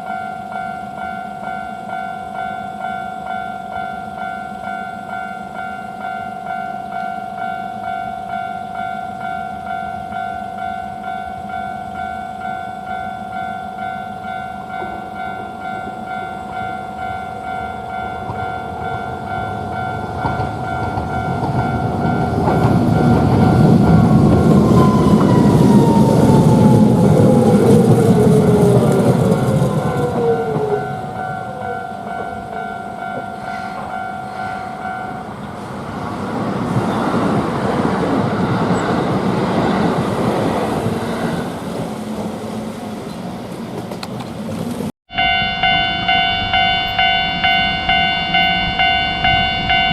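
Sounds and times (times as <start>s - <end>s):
level crossing alarm bell ringing: 0.0s - 35.6s, 45.1s - 49.9s
falling whine of passing tram: 0.0s - 49.9s
tram rumbling across crossing: 0.0s - 49.9s
quiet rumble of wheels: 35.4s - 44.9s.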